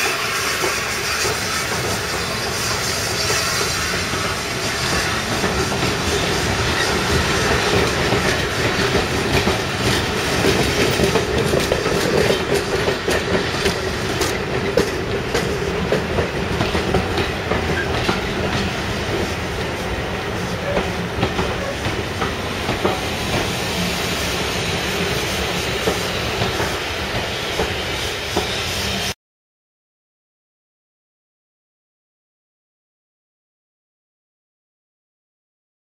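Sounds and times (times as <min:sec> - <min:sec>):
train wheels clicking over rail joints: 0:00.0 - 0:29.1.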